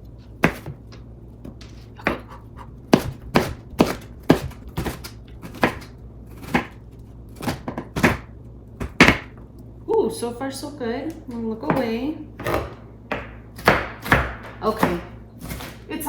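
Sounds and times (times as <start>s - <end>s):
knife chopping on cutting board: 0.4s - 0.8s, 2.0s - 6.8s, 7.4s - 9.3s, 11.7s - 15.9s.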